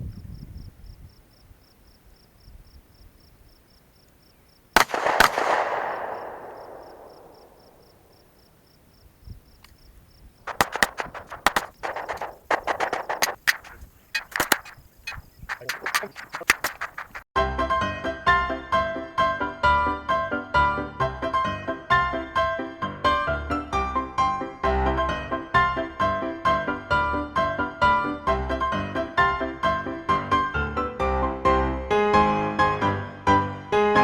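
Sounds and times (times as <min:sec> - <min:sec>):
faint insect chirping: 0:00.0 - 0:04.8, 0:06.1 - 0:17.3
gunshot blast with echo: 0:04.8 - 0:08.1
rapid gunshots: 0:04.8 - 0:08.1, 0:10.5 - 0:17.3.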